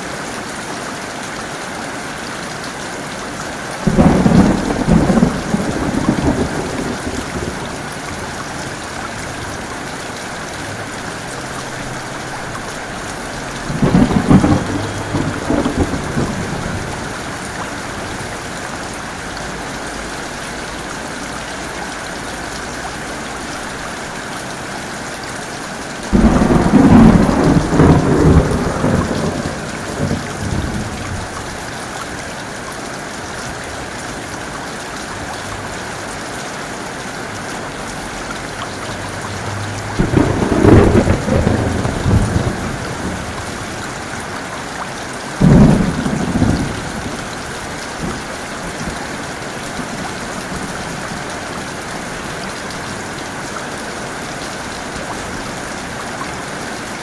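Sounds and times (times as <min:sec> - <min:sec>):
heavy rain falling: 0:00.0 - 0:57.0
thunder claps rumbling: 0:03.8 - 0:20.6, 0:26.1 - 0:31.7, 0:38.9 - 0:44.4, 0:45.4 - 0:51.3.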